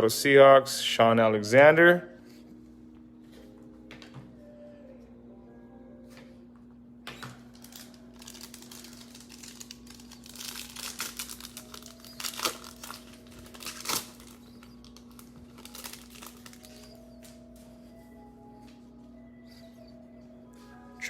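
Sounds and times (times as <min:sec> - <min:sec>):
foil wrapper tearing and crinkling: 0:07.4 - 0:17.2.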